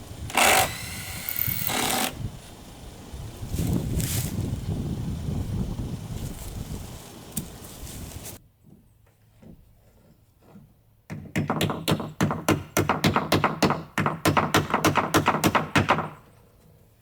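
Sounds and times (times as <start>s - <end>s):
hammer knocking on wood: 11.1s - 16.2s.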